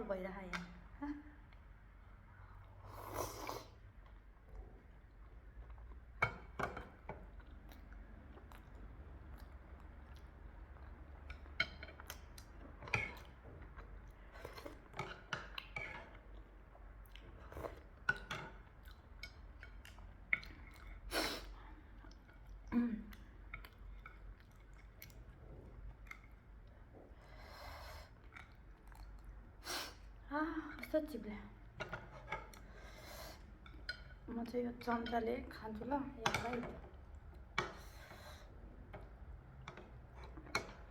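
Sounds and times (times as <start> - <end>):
person chewing: 7.3 - 11.2, 15.5 - 21.1, 22.0 - 26.9, 28.2 - 29.5.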